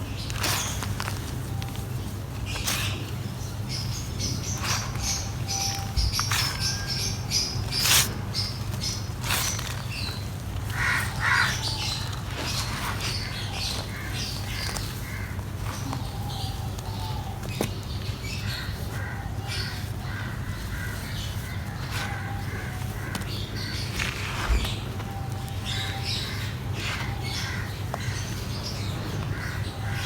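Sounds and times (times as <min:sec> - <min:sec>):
birds calling: 0:00.0 - 0:30.0
dry mud crumbling: 0:04.5 - 0:16.2.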